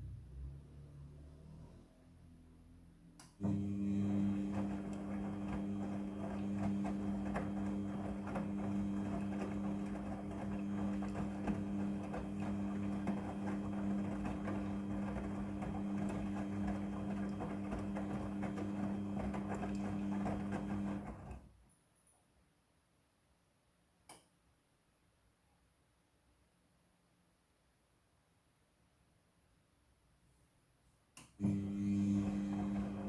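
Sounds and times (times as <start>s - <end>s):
washing machine motor hum: 3.4s - 21.5s, 31.4s - 33.0s.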